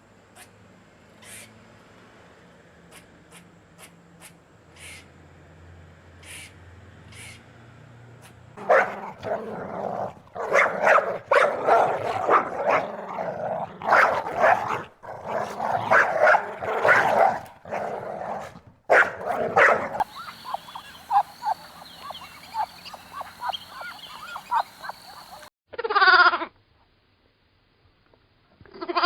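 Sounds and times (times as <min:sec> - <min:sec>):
dog barking: 0:08.6 - 0:25.5
high peeps from small animal: 0:20.0 - 0:25.5.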